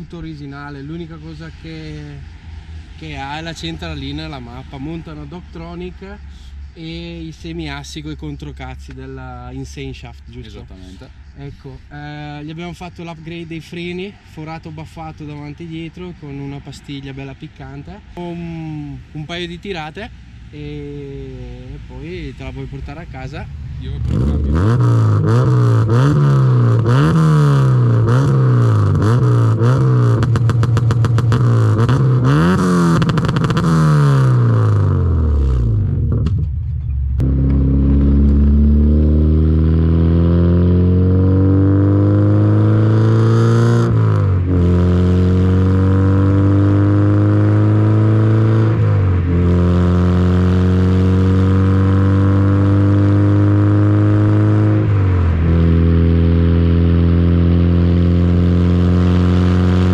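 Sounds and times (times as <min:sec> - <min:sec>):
car engine revving and accelerating: 0:22.4 - 0:36.5, 0:37.2 - 0:59.9.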